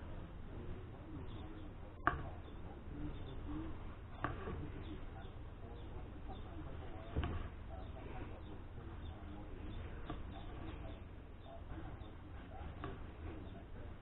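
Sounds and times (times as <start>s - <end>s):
faint bird cooing: 0.0s - 14.0s.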